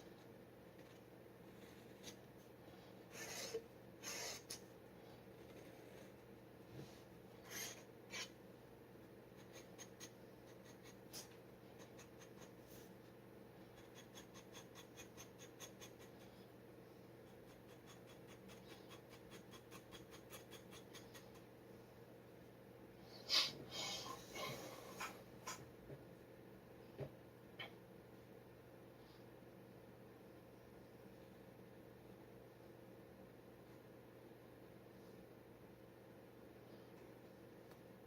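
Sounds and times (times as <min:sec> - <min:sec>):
faint room hum: 0:00.0 - 0:38.0
dip pen scratching on paper: 0:03.1 - 0:04.6, 0:05.4 - 0:06.2, 0:07.4 - 0:08.4, 0:09.3 - 0:12.7, 0:13.7 - 0:16.4, 0:17.2 - 0:21.4.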